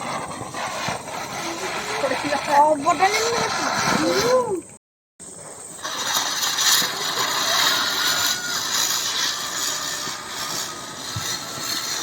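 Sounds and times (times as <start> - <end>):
firework hissing: 0.0 - 12.0.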